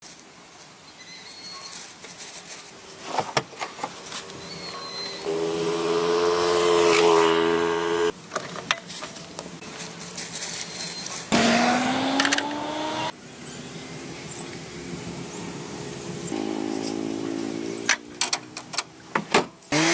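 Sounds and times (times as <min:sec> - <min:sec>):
motor speeding up: 0:05.2 - 0:08.2, 0:11.3 - 0:13.1
motor running steadily: 0:05.3 - 0:08.1.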